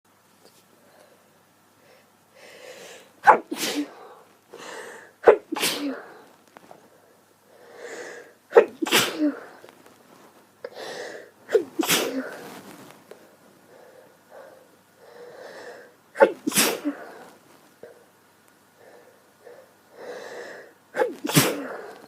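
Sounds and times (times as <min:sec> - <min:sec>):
quick in-breath: 0:01.8 - 0:03.2, 0:03.9 - 0:05.2, 0:06.1 - 0:08.4, 0:10.7 - 0:11.3, 0:13.2 - 0:16.0, 0:18.8 - 0:20.8
woman sneezing: 0:03.2 - 0:04.0, 0:05.2 - 0:06.1, 0:08.5 - 0:09.5, 0:11.5 - 0:12.3, 0:16.2 - 0:17.0, 0:21.0 - 0:21.9.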